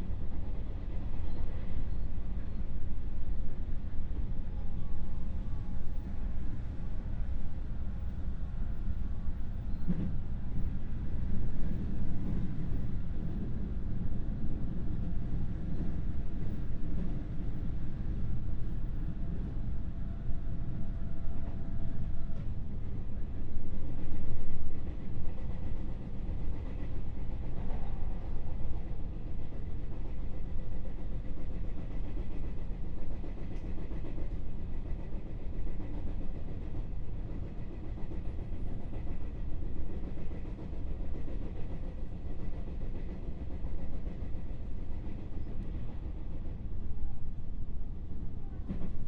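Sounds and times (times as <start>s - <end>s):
train wheels rumbling on rail: 0.0s - 49.0s.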